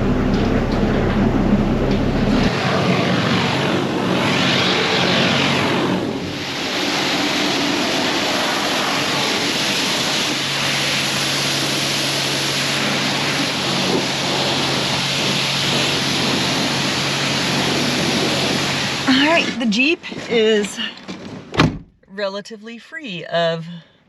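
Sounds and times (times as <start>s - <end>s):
low steady hum: 0.0s - 2.5s
loud rushing noise: 0.0s - 9.6s.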